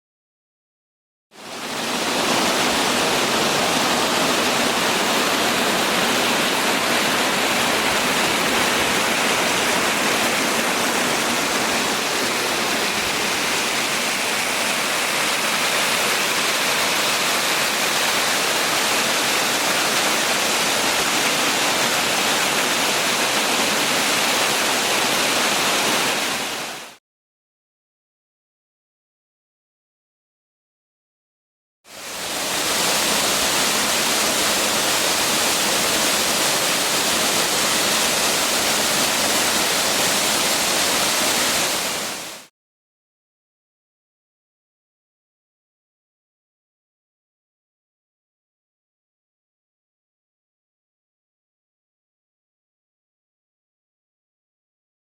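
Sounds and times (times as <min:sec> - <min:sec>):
waterfall rushing: 0:01.4 - 0:27.0, 0:31.9 - 0:42.5.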